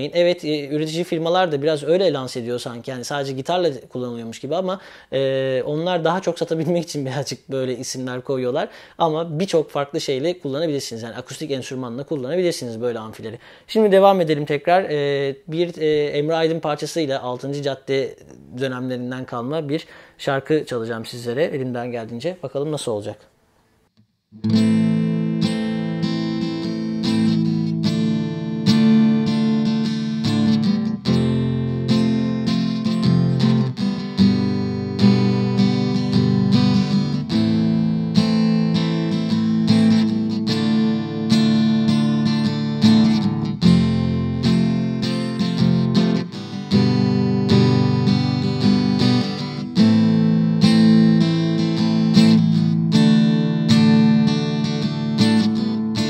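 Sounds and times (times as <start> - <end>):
acoustic guitar strumming chords: 24.4 - 56.0.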